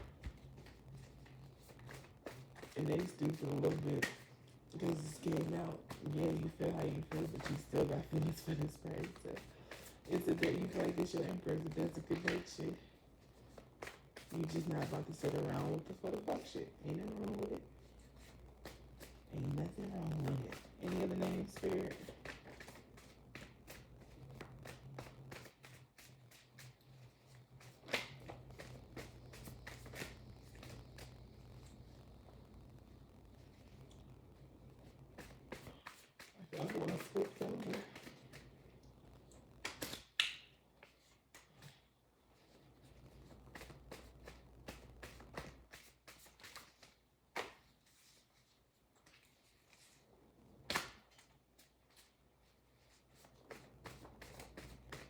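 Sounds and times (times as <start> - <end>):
cards shuffling and riffling: 0.0 - 31.7, 34.8 - 50.0, 50.7 - 55.0
card slap: 39.6 - 40.4, 50.7 - 51.2.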